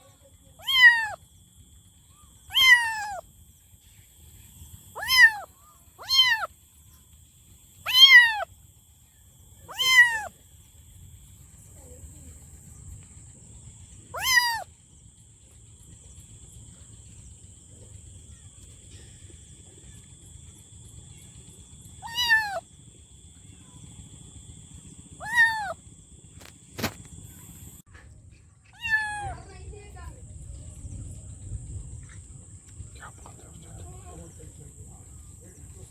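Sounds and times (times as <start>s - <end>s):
kitten meowing: 0.6s - 1.2s, 2.5s - 3.2s, 5.0s - 6.5s, 7.9s - 8.5s, 9.7s - 10.3s, 14.2s - 14.7s, 22.0s - 22.6s, 25.2s - 25.8s, 28.8s - 29.4s.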